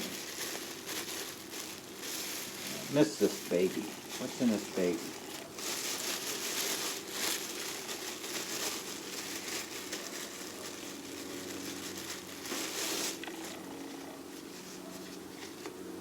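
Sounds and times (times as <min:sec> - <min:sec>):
rustling and crinkling of items: 0:00.0 - 0:16.0.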